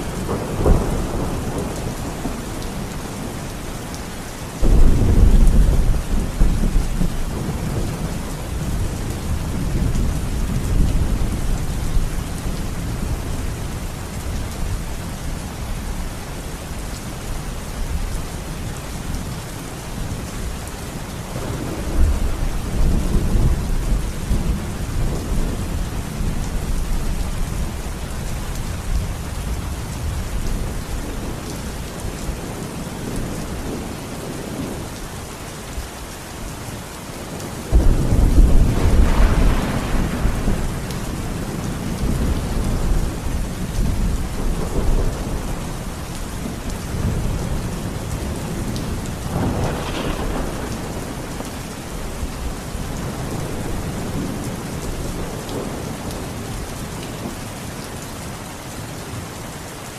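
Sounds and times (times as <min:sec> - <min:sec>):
rolling thunder: 0:00.0 - 0:03.4, 0:04.6 - 0:13.5, 0:21.4 - 0:27.5, 0:37.7 - 0:56.2
steady rain: 0:00.0 - 0:59.9
loud thunderclap: 0:04.6 - 0:07.9, 0:37.7 - 0:43.1, 0:48.7 - 0:51.5.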